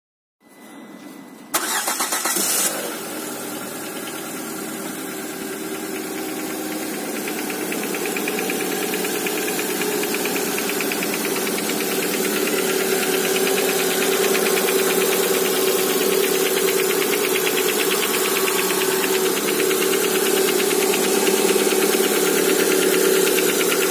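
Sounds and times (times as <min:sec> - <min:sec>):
engine starter cranking: 0:01.5 - 0:02.9, 0:07.4 - 0:23.9
car engine idling: 0:01.6 - 0:23.9
fast even engine knock: 0:04.9 - 0:23.9.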